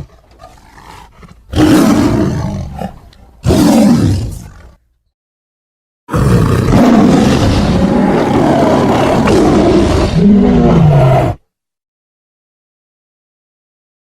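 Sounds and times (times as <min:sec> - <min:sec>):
tiger roaring: 0:00.0 - 0:04.8, 0:06.1 - 0:11.4.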